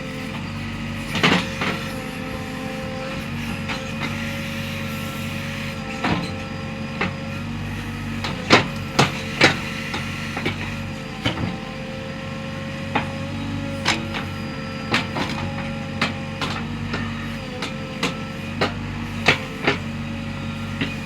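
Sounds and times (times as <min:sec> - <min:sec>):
diesel engine running: 0:00.0 - 0:21.0.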